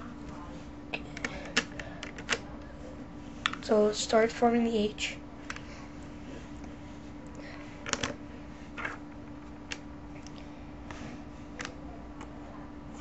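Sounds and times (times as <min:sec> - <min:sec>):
plastic puzzle pieces clicking: 0:01.2 - 0:02.4.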